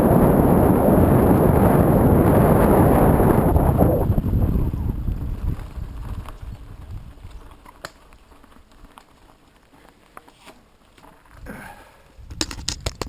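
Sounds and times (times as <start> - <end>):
wind buffeting microphone: 0.0 - 7.6, 12.2 - 13.0
sharp clicks and knocks: 12.3 - 13.0.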